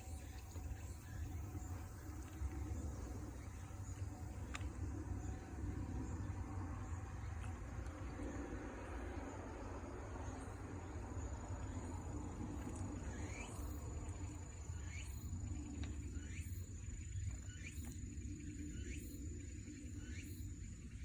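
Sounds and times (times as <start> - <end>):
high-pitched insect trill: 0.0 - 20.8.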